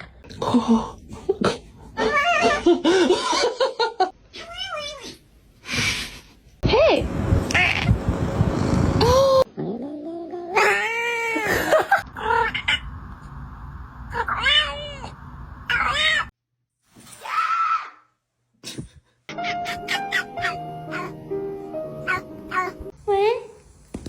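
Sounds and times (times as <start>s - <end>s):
cats meowing and yowling: 2.0s - 2.6s, 10.5s - 11.5s, 19.7s - 21.2s, 22.0s - 22.8s.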